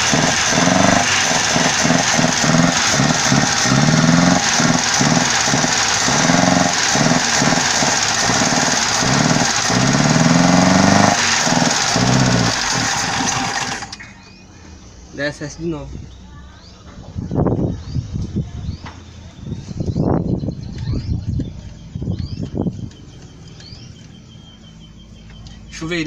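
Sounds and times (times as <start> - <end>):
car engine revving: 0.0 - 14.0
car engine running unevenly: 0.0 - 14.8.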